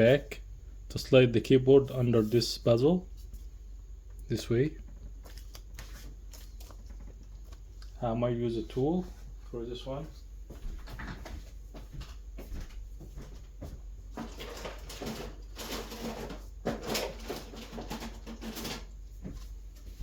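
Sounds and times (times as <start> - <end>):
plastic scraping: 14.2 - 19.0.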